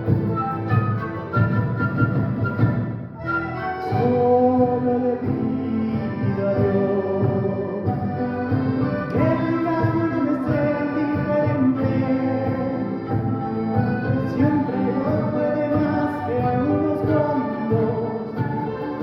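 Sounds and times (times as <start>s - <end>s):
orchestra of andean instruments: 0.0s - 19.0s.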